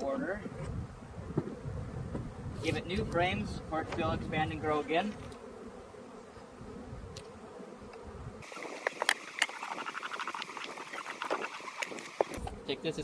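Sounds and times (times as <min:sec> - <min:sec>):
bees buzzing: 0:00.0 - 0:13.0
wooden hive frames clicking: 0:07.1 - 0:12.6.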